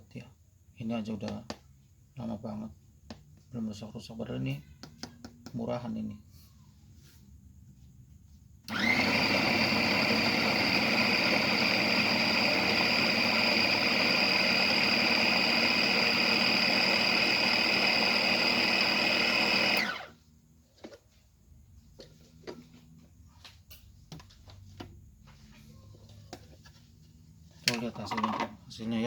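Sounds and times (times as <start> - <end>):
electric food chopper motor whine: 8.7 - 20.2.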